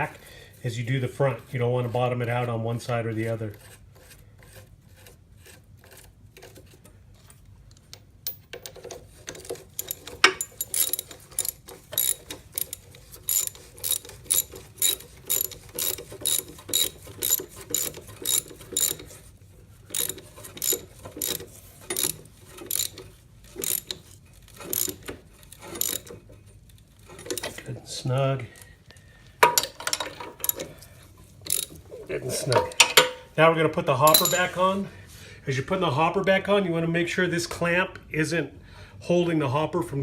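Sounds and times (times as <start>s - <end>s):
ratchet wrench clicking: 9.7s - 19.2s, 19.9s - 26.2s, 27.2s - 27.6s, 29.6s - 30.7s, 31.5s - 31.8s.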